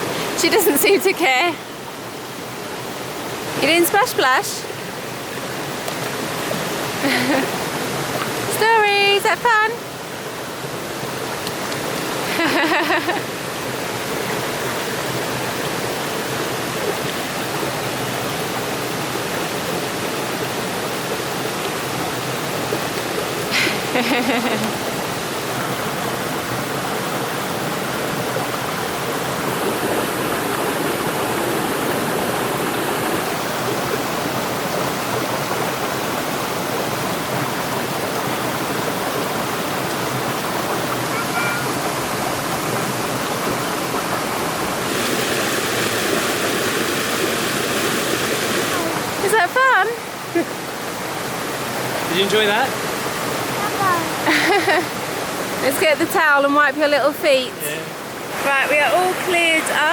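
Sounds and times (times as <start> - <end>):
stream water rushing: 0.0 - 59.9
short voice sound: 41.1 - 41.7.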